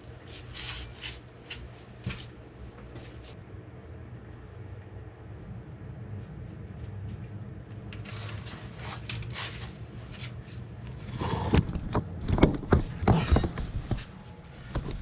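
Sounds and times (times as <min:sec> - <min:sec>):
low steady hum: 0:00.0 - 0:15.0
metal tools clanking: 0:13.1 - 0:14.4
short metallic ring: 0:13.1 - 0:14.4.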